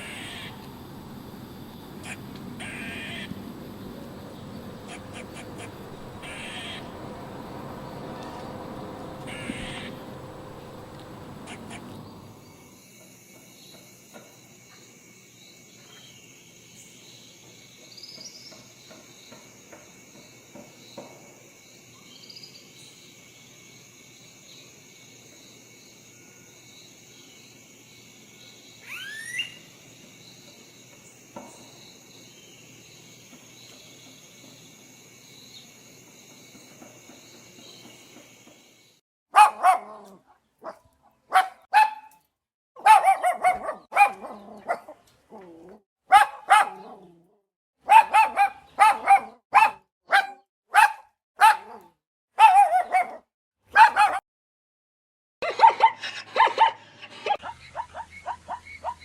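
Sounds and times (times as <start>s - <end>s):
short calls: 0.0s - 12.6s
insects chirring: 0.0s - 39.0s
dog barking: 39.3s - 42.1s, 42.8s - 45.0s, 46.1s - 47.1s, 47.8s - 54.2s, 55.4s - 56.8s.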